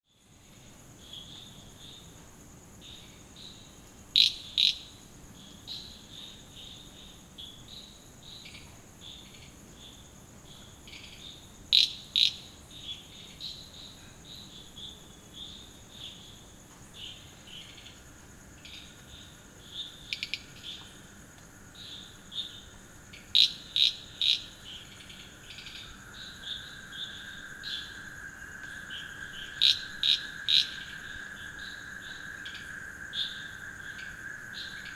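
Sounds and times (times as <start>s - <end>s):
high insect trill: 0.1s - 34.9s
frog calls: 3.0s - 5.0s, 8.4s - 16.4s, 17.0s - 21.1s, 21.7s - 34.9s.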